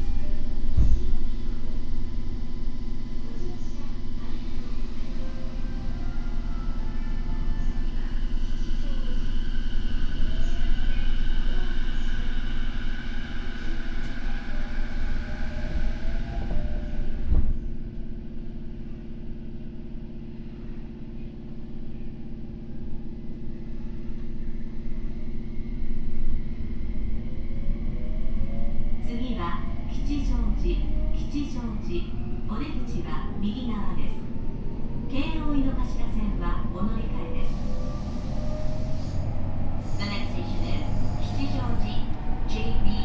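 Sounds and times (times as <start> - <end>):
traction motors whining: 0.0 - 17.6, 29.9 - 43.0
wheels rumbling on rail: 0.0 - 43.0.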